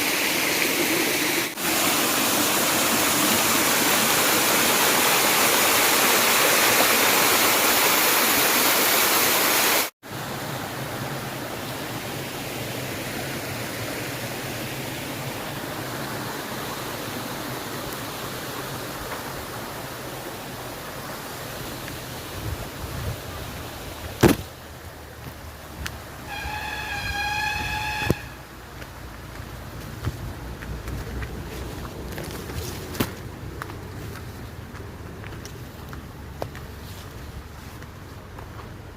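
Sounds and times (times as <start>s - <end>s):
waterfall rushing: 0.0s - 24.1s.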